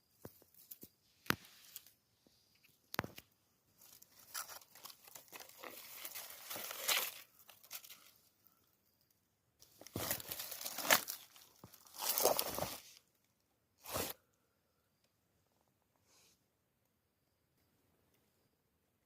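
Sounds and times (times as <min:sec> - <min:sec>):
dry material crackling and rustling: 0:03.8 - 0:08.2, 0:09.6 - 0:13.0.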